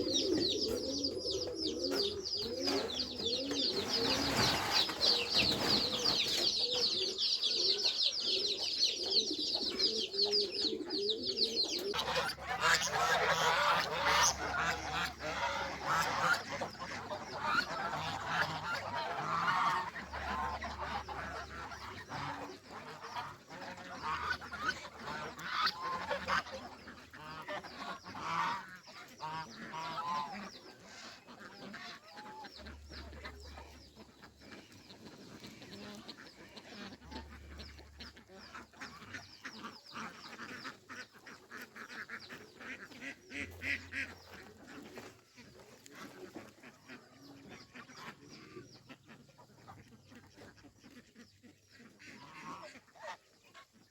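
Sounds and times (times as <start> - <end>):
geese honking: 11.6 - 53.9.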